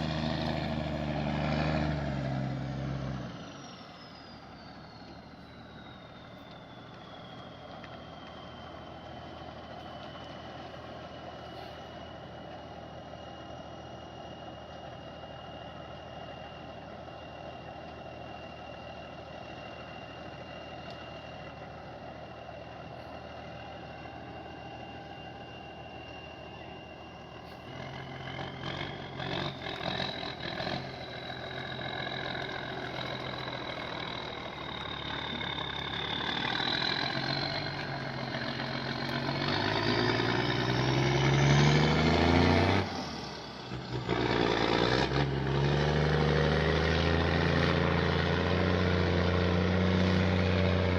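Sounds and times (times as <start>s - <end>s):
heavy machine engine: 0.0s - 50.9s
high machine whine: 22.9s - 41.1s.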